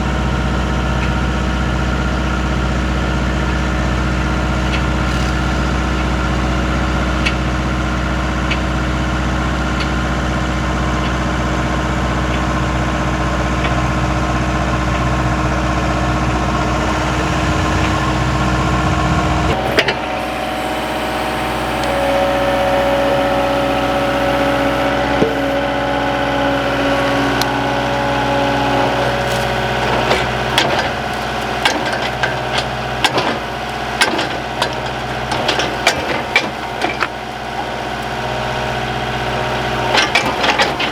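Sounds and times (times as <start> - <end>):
skid steer engine running: 0.0 - 40.9
sharp knocks and clatter: 34.0 - 37.1.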